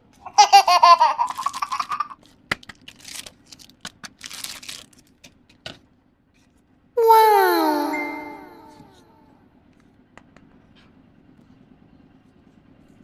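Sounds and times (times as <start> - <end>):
crinkling rustling: 2.2 - 5.2.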